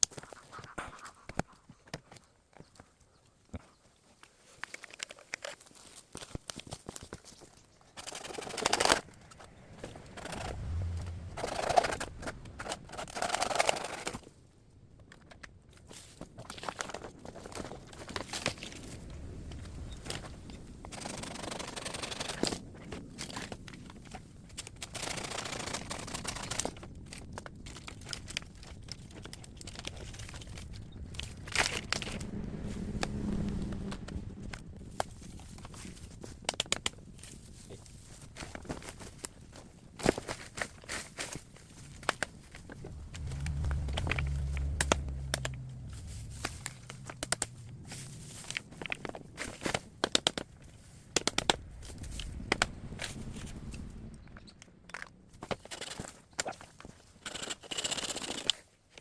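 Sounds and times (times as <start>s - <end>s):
bamboo leaves rustling: 25.0s - 54.1s.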